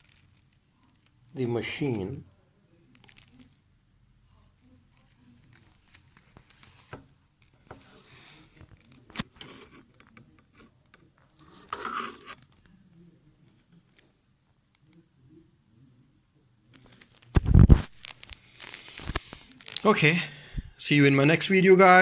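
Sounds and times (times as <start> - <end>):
packaging rustling: 0.0 - 1.1, 2.9 - 3.5, 16.8 - 20.0.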